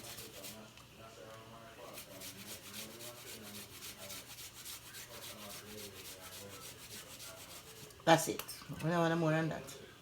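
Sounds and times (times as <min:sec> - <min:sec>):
ginger grating on hand grater: 0:00.0 - 0:00.6, 0:01.9 - 0:07.8.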